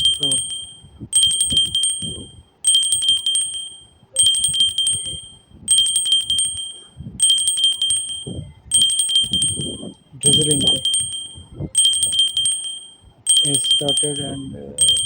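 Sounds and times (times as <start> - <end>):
high bell-like ringing trill: 0.0 - 15.0
faint low murmuring: 8.2 - 12.1, 13.2 - 15.0.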